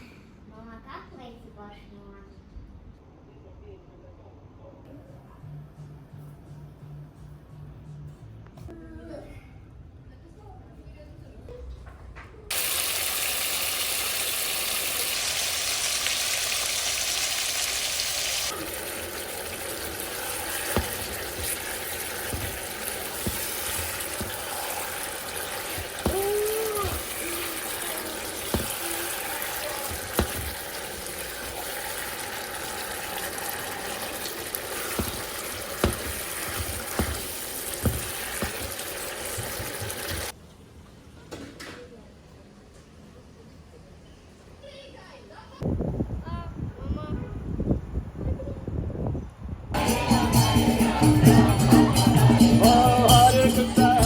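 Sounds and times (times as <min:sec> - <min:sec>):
water running from a tap: 0:12.5 - 0:40.3.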